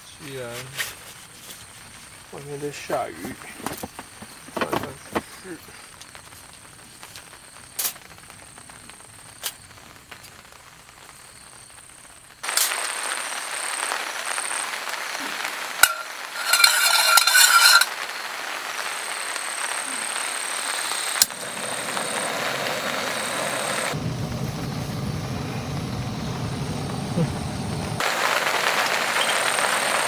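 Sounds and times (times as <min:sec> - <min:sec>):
faint hiss: 0:00.0 - 0:24.0
food sizzling in a pan: 0:05.4 - 0:24.0, 0:28.0 - 0:30.0.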